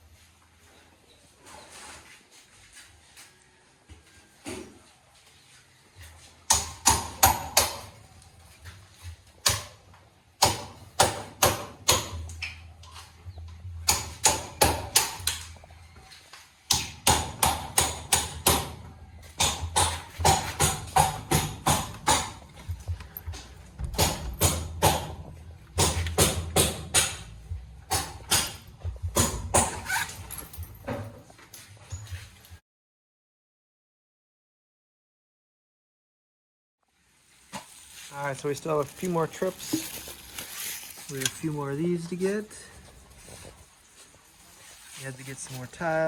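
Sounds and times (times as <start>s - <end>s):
low hum: 21.9s - 31.2s.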